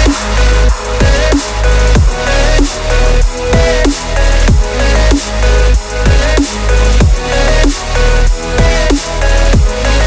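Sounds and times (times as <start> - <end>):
electronic music with heavy bass: 0.0 - 10.0.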